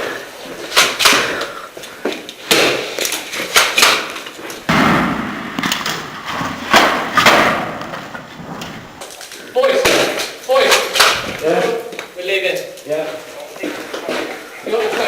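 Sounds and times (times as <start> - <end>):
scuffing and rustling: 4.2 - 9.3
sharp knocks and bangs: 4.7 - 9.1.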